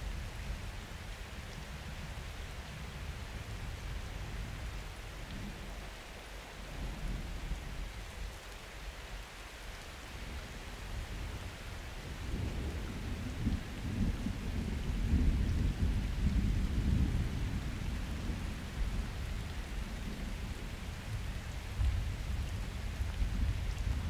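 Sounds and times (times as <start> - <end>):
steady rain falling: 0.0 - 24.0
thunder rumbling: 12.2 - 19.3.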